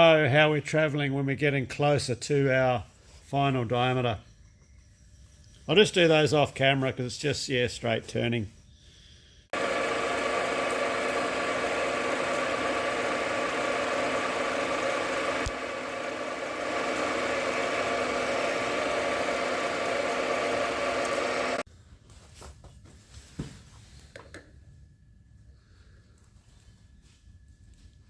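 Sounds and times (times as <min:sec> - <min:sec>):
lathe motor whine: 0:09.6 - 0:21.6.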